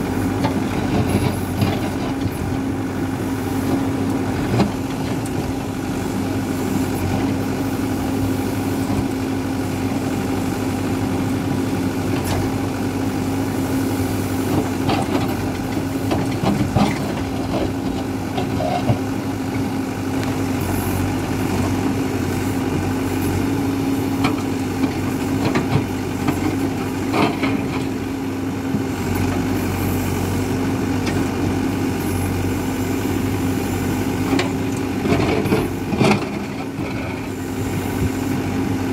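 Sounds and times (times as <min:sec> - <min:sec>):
diesel engine running: 0:00.0 - 0:38.9.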